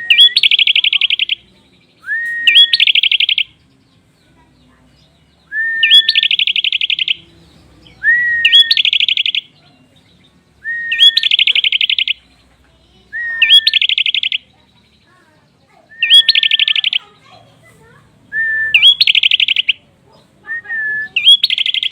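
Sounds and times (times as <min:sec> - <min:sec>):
bird whistling and trilling: 0:00.0 - 0:03.6, 0:05.5 - 0:07.2, 0:07.8 - 0:09.7, 0:10.6 - 0:12.3, 0:13.1 - 0:14.5, 0:15.8 - 0:17.2, 0:18.4 - 0:21.9.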